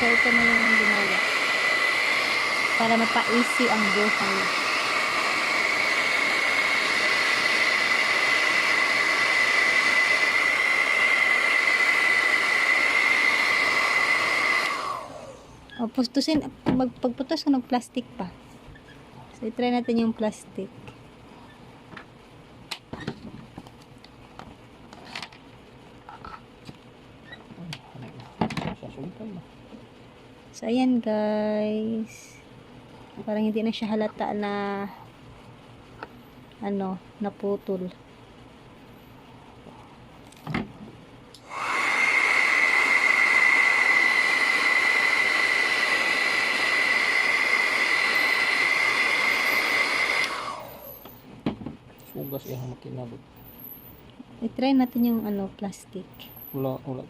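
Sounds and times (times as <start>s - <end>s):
plastic welder gun whining: 45.0s - 51.2s.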